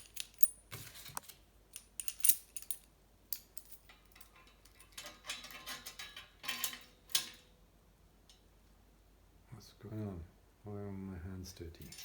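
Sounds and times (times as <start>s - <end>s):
metal parts clinking and rattling: 0.0s - 0.8s, 1.7s - 7.5s, 11.8s - 12.0s.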